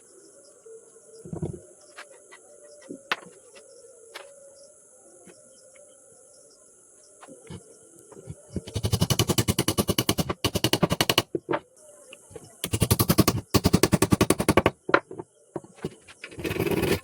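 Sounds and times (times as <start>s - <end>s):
power tool hammering rapidly: 8.7s - 11.3s, 12.6s - 14.8s.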